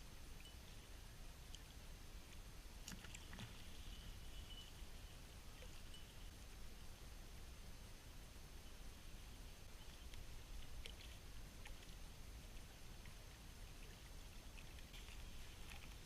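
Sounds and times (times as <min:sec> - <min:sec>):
faint low rumble: 0:00.0 - 0:16.0
soft ticks: 0:09.8 - 0:13.2.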